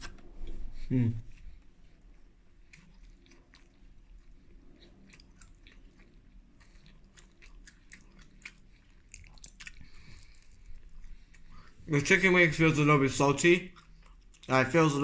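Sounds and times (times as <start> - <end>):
person chewing food: 0.0 - 12.5, 13.4 - 14.7.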